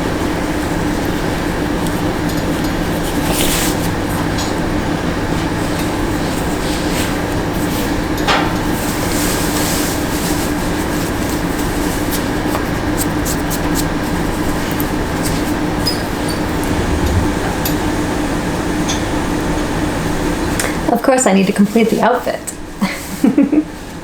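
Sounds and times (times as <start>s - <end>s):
short rising squeak: 15.9s - 18.2s
low hum: 16.4s - 19.3s.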